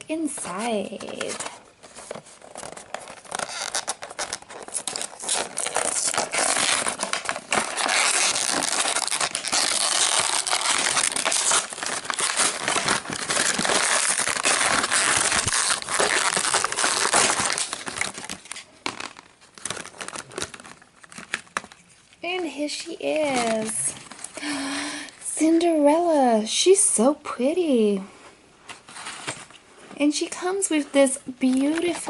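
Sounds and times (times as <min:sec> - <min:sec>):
packaging crackling and rustling: 0:00.2 - 0:24.5, 0:31.4 - 0:32.0.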